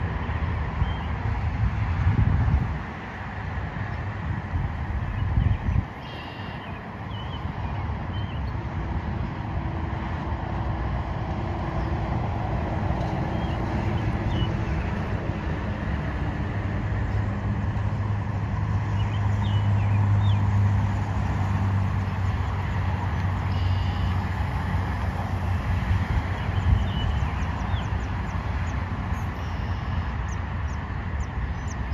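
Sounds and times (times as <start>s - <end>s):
highway traffic: 0.0s - 31.9s
truck engine drone: 8.6s - 31.7s.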